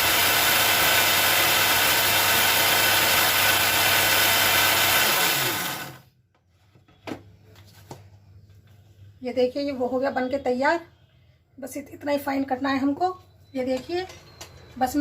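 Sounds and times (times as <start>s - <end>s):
mixer grinder motor: 0.0s - 6.1s.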